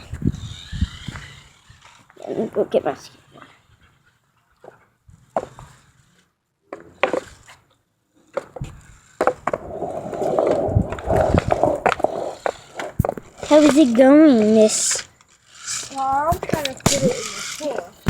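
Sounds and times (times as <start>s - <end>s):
skateboard wheels rolling on pavement: 4.6s - 18.0s
scattered knocks: 16.2s - 17.2s.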